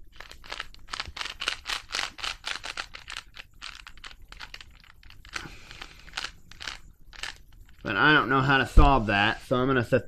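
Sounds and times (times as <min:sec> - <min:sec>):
puzzle cube clicking and rattling: 0:00.0 - 0:07.9.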